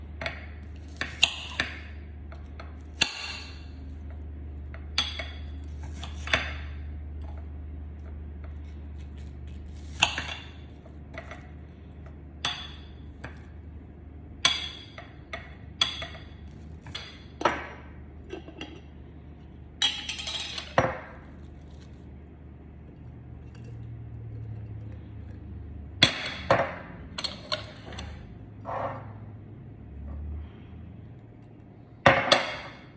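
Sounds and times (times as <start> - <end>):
low steady hum: 0.0 - 32.9
glassware and utensils clinking: 15.8 - 19.0, 19.8 - 21.3.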